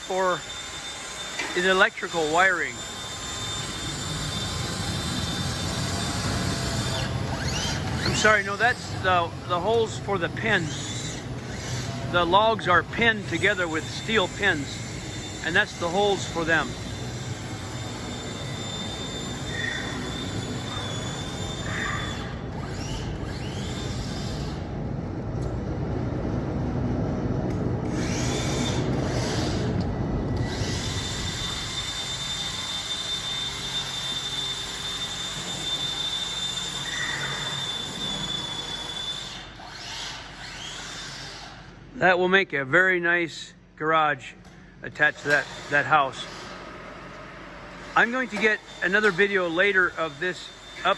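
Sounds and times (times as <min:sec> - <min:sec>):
workshop machinery with high whine: 0:00.0 - 0:50.9
low hum: 0:01.4 - 0:33.5.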